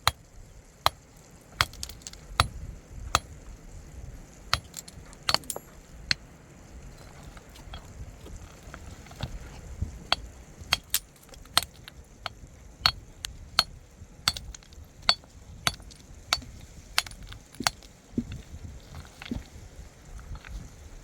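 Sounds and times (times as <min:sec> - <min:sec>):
metal hand tool clinking: 0:04.6 - 0:05.8.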